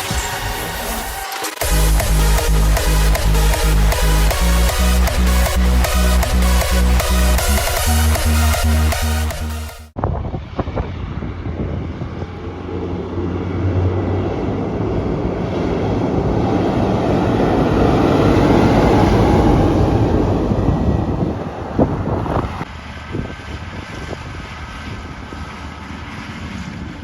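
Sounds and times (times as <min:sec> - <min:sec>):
wind on microphone: 0:10.0 - 0:27.0
farm machinery diesel engine passing: 0:10.9 - 0:27.0.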